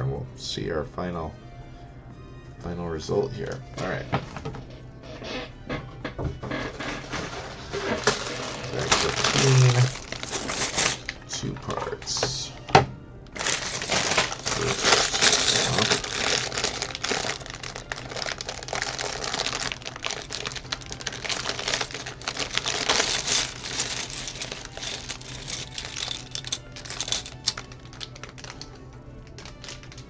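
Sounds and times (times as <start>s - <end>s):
plastic bags crinkling: 3.4s - 4.8s, 6.4s - 12.5s, 13.4s - 30.0s
plastic bricks clicking and rattling: 6.7s - 11.2s, 13.4s - 30.0s.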